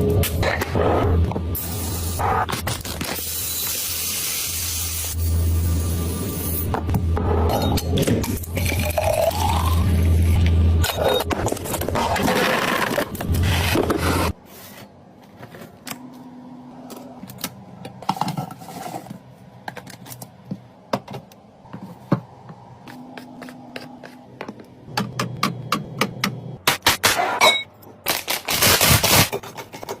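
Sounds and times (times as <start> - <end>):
packaging scraping and rubbing: 11.2 - 15.8, 28.1 - 30.0.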